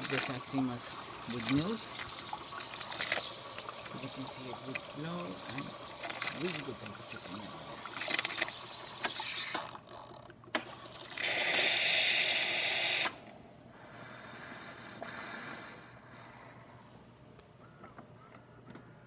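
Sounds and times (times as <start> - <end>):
espresso machine hissing: 0.0 - 9.6, 10.6 - 13.3.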